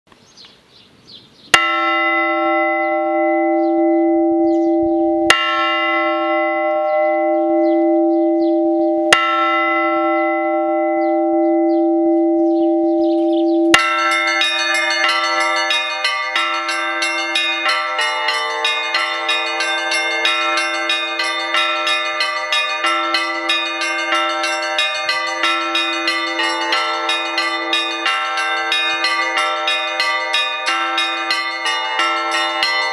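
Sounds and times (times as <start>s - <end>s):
peal of many bells: 1.5s - 32.9s
large bell struck: 1.6s - 32.9s.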